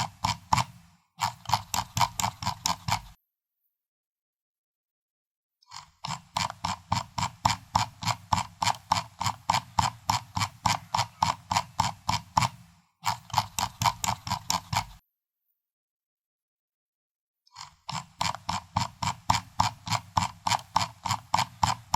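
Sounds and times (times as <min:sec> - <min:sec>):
mouse scroll wheel clicks: 0:00.0 - 0:03.2, 0:05.7 - 0:15.0, 0:17.5 - 0:21.9.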